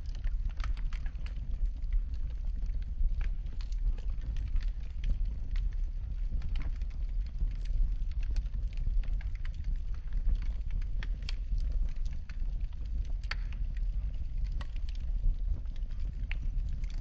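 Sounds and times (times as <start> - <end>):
fire crackling and popping: 0.0 - 17.0
fire flames rumbling: 0.0 - 17.0.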